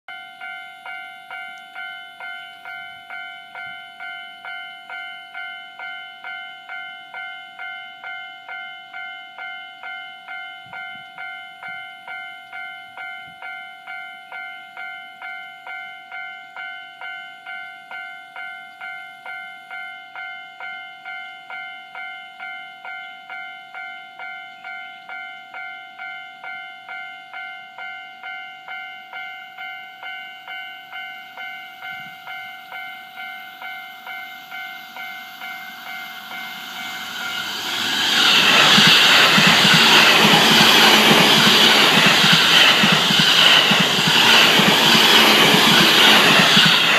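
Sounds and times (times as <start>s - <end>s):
electric train passing: 29.1s - 46.9s.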